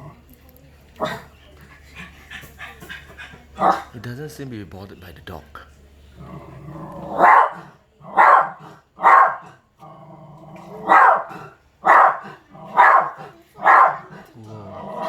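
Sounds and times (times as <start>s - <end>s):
dog barking: 1.0s - 1.3s, 3.6s - 4.0s, 7.0s - 9.6s, 10.7s - 14.3s
dog growling low: 6.1s - 15.0s.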